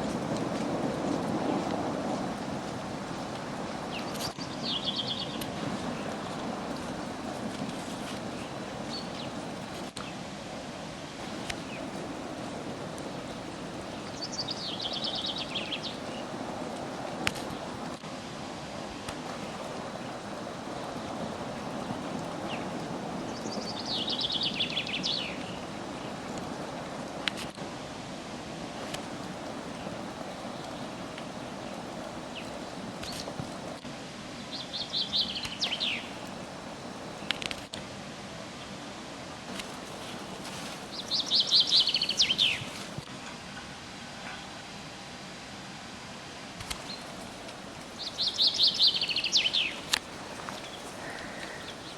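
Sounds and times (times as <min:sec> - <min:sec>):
low background noise: 0:00.0 - 0:51.9
songbird trilling and chirping: 0:03.9 - 0:07.2, 0:11.5 - 0:17.9, 0:19.4 - 0:26.8, 0:34.5 - 0:37.4, 0:40.0 - 0:43.0, 0:46.8 - 0:51.9
low rushing roar: 0:10.6 - 0:18.0, 0:19.1 - 0:33.9, 0:46.8 - 0:51.9.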